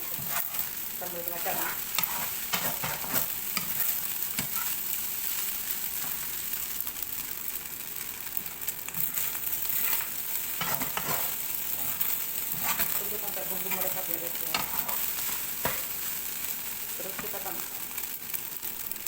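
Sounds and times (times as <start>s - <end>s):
utensil scraping a pan: 0.0s - 0.8s, 1.4s - 4.9s, 9.0s - 16.0s
rice sizzling in a pan: 0.0s - 19.0s.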